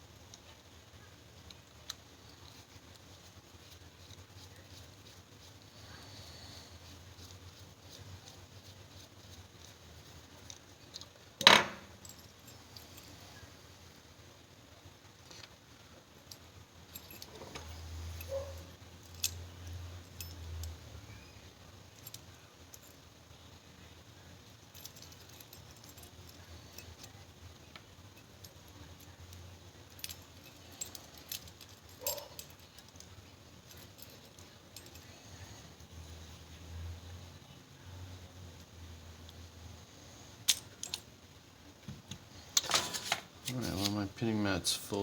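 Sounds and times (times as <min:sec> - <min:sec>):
small metal clicks and clinks: 0:06.8 - 0:13.4, 0:16.2 - 0:21.2, 0:21.9 - 0:23.1, 0:24.4 - 0:36.0, 0:40.4 - 0:41.1.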